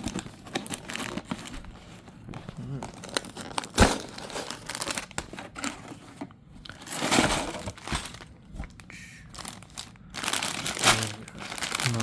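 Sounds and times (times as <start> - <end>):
cardboard and bags crinkling: 0.0 - 12.0.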